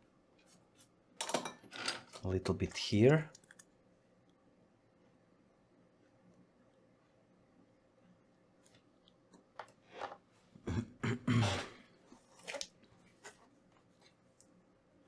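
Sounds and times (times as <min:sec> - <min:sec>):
small clicks and crunchy crackles: 0:03.3 - 0:04.4.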